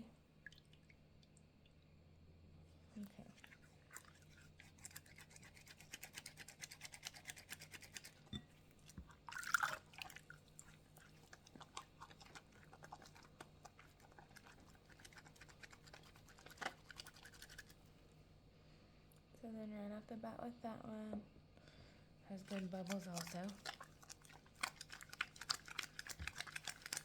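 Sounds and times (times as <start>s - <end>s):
wet hands lathering soap: 3.0s - 18.0s, 22.3s - 27.0s.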